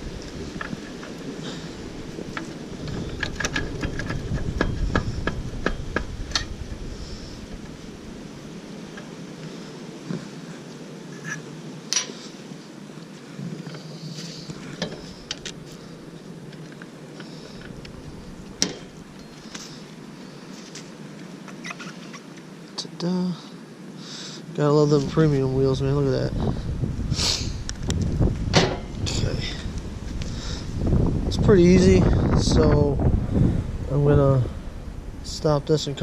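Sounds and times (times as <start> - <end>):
metal parts and tools clanking: 2.3 - 6.6, 11.2 - 12.2, 18.6 - 19.7, 28.5 - 29.0.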